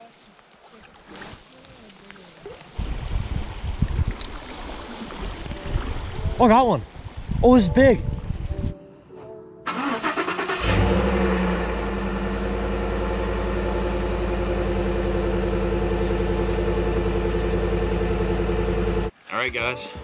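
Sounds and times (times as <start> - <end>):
vehicle engine starting and idling: 9.7 - 19.1.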